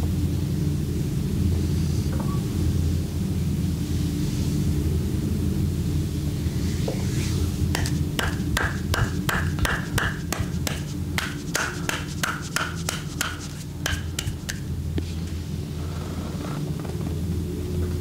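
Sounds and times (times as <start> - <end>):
steady low hum: 0.0 - 18.0
hands slapping on skin: 7.8 - 14.7.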